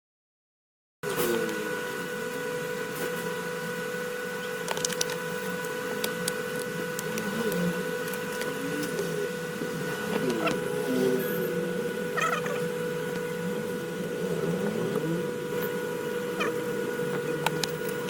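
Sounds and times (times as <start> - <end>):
steady machine hum: 1.0 - 18.0
faint wavering tones: 1.2 - 18.0
small clicks: 4.6 - 5.2.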